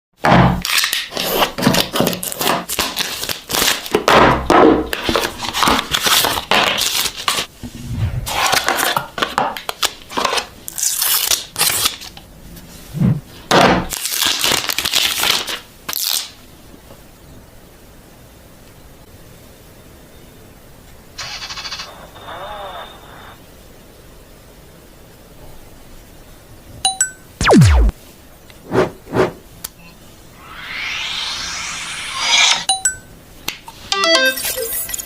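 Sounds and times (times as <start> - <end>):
packaging rustling and tearing: 0.6 - 3.9, 5.0 - 7.5, 8.5 - 12.1, 13.9 - 16.3.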